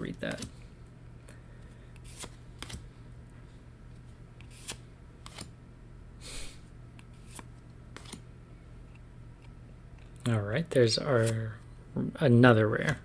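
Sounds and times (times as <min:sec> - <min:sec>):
card rustle: 0:01.7 - 0:02.9, 0:03.9 - 0:05.5, 0:07.1 - 0:08.2
card snaps: 0:02.0 - 0:02.8, 0:07.3 - 0:08.2
trading cards flicked by hand: 0:02.0 - 0:02.9, 0:04.4 - 0:05.5, 0:07.0 - 0:08.2.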